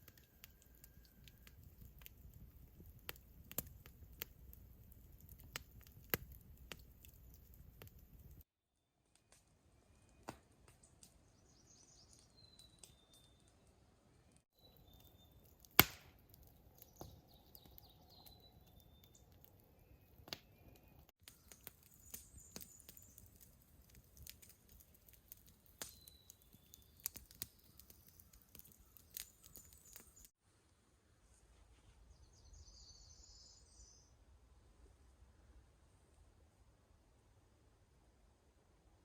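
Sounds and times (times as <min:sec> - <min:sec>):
loud crack: 0:15.8 - 0:16.2.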